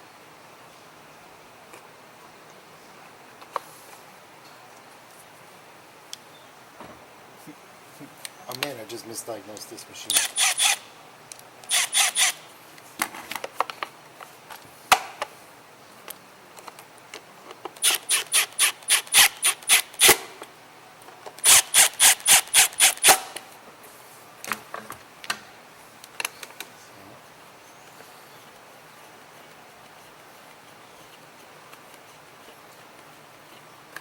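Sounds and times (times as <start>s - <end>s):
sharp metallic clicks: 10.1s - 12.4s, 21.4s - 23.4s.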